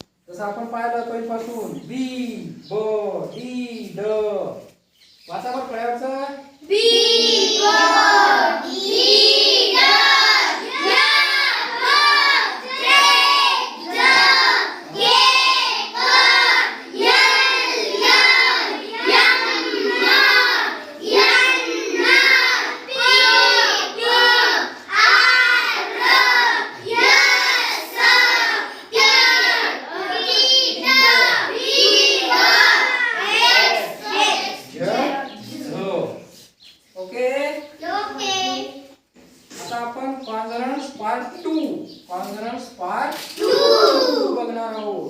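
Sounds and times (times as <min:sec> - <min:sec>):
children chanting in unison: 0:06.7 - 0:36.3, 0:43.4 - 0:44.5.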